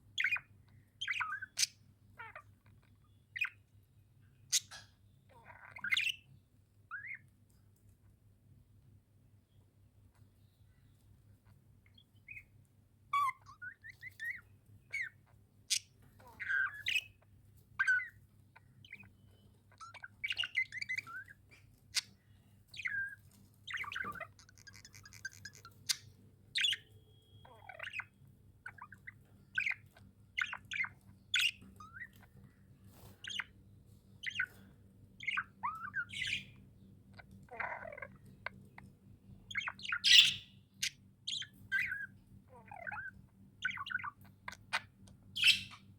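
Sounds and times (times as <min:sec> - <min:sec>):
budgerigars chirping: 0:00.2 - 0:03.6, 0:04.5 - 0:06.3, 0:06.9 - 0:07.2, 0:13.1 - 0:18.2, 0:18.8 - 0:33.6, 0:34.2 - 0:38.8, 0:39.4 - 0:45.9
bird squawk: 0:13.1 - 0:17.2, 0:17.8 - 0:33.6, 0:34.2 - 0:38.7, 0:39.5 - 0:45.9.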